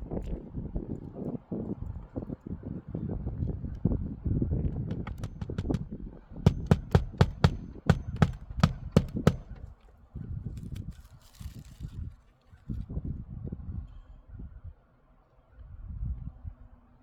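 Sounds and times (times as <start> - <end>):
nails struck into roof shingles: 4.7 - 10.0.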